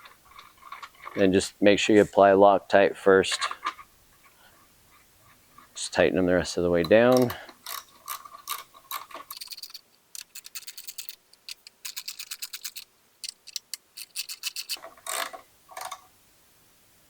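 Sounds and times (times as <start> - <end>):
ratchet wrench clicking: 7.6 - 15.3.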